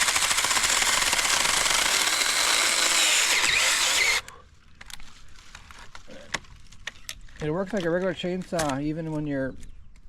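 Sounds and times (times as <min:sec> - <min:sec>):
mini chainsaw buzzing: 0:00.0 - 0:04.3.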